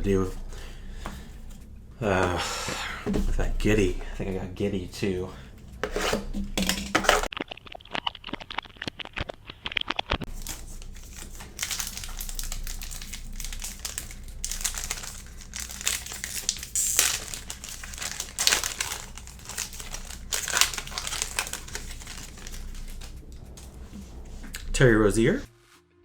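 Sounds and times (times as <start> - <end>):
foil wrapper crinkling: 6.6 - 24.0.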